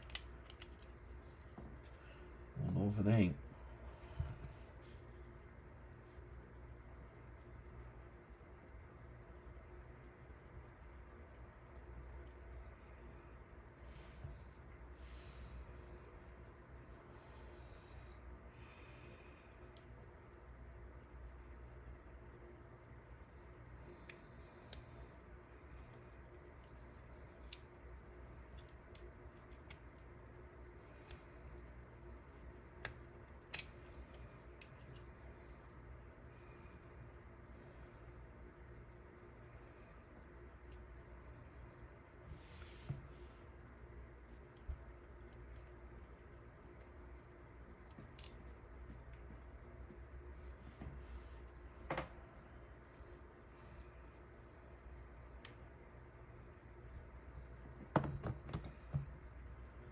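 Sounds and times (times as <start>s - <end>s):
small metal clicks and taps: 0.0s - 0.9s
faint steady hum: 0.0s - 59.9s.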